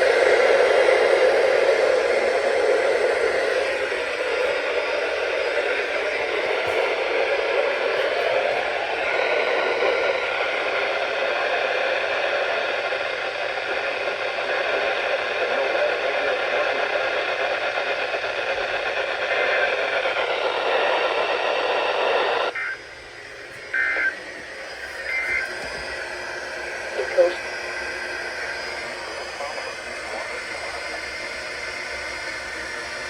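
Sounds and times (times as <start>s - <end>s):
radio static hiss: 0.0s - 33.0s.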